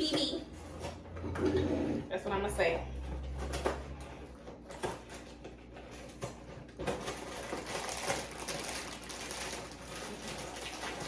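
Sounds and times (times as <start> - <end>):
dry cereal rattling into a bowl: 7.1 - 11.0.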